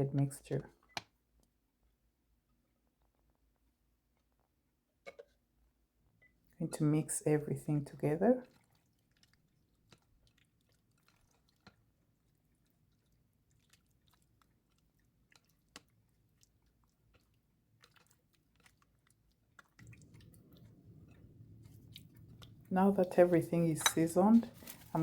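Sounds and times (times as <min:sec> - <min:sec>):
wet squishes of mixing meat: 0:08.4 - 0:25.0
faint low rumble: 0:19.8 - 0:25.0.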